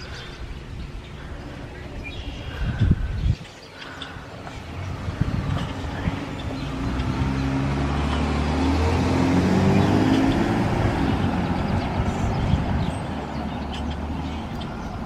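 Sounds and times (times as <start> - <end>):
road noise: 0.0 - 15.0
vehicle engine passing by: 3.9 - 15.0.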